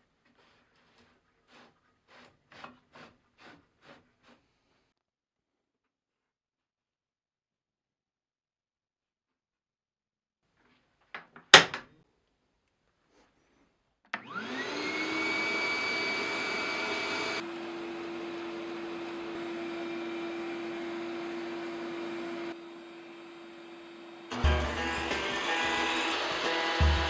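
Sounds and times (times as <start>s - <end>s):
power tool motor whining: 14.2s - 27.0s.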